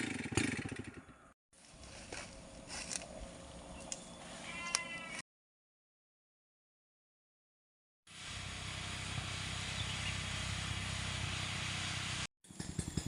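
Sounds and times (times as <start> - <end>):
chainsaw engine idling: 0.0 - 1.3, 12.5 - 13.0.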